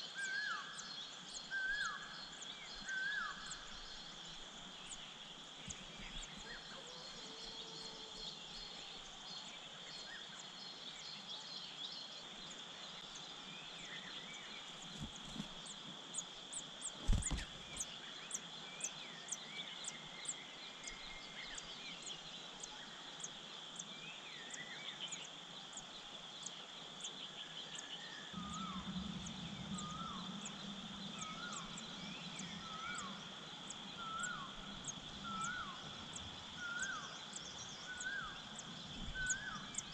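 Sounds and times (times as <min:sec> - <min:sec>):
high-pitched insect drone: 0:28.3 - 0:39.9.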